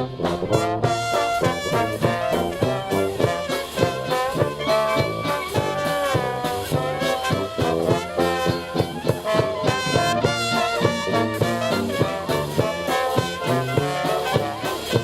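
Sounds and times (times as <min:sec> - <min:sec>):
jazz band playing swing: 0:00.0 - 0:15.0.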